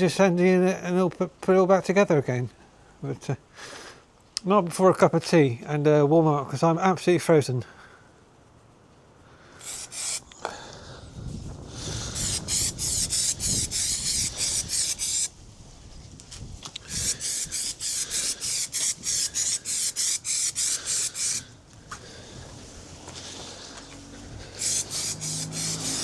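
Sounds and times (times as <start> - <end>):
abrasive scrubbing on metal: 9.6 - 10.2, 12.2 - 15.3, 16.9 - 21.5, 24.6 - 26.0.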